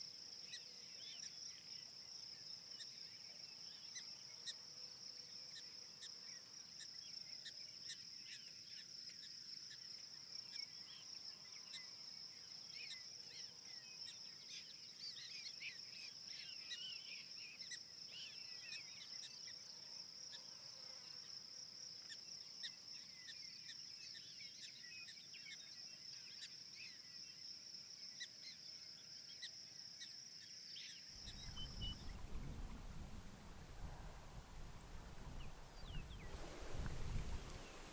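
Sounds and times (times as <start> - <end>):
insects chirping: 31.2 - 37.9
low rushing noise: 31.3 - 37.9.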